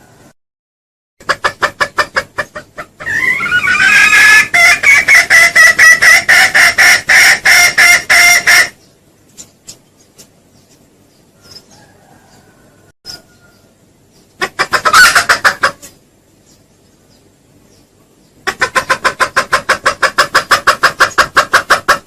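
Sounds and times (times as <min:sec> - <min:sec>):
junglefowl calling: 0:01.2 - 0:08.8, 0:14.4 - 0:16.0, 0:18.4 - 0:22.0.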